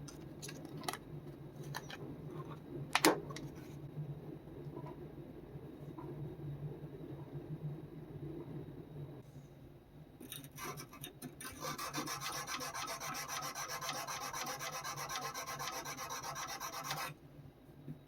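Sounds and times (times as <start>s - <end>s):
sandpaper scraping steel blade: 10.6s - 17.1s.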